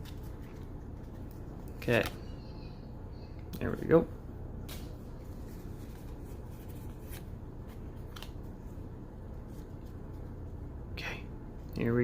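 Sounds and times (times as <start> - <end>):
steady low hum: 0.0 - 12.0
cards clicking and rustling: 5.8 - 8.5.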